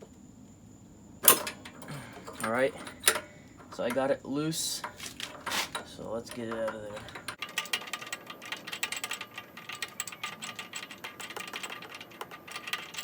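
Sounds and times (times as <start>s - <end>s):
ratchet wrench clicking: 1.3s - 13.0s.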